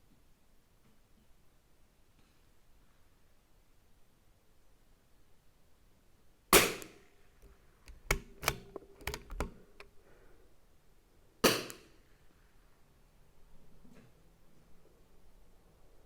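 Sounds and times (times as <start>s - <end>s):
rifle bolt clicks: 7.9s - 9.9s.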